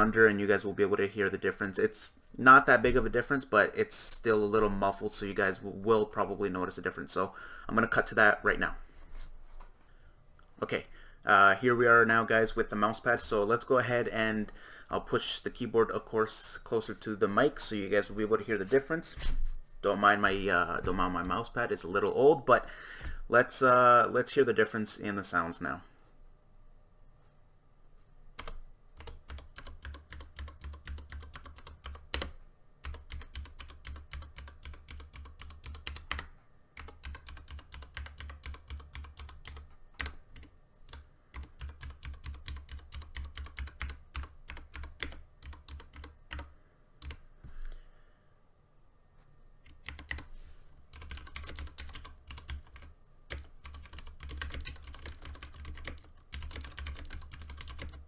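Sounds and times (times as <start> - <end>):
keyboard typing clicks: 49.7 - 50.3, 50.9 - 58.0.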